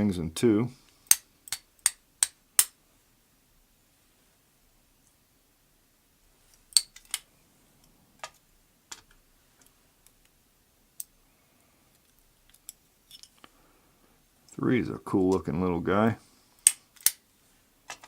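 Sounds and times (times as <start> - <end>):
small metal parts clicking: 6.6 - 7.2, 11.9 - 13.5, 16.6 - 17.2.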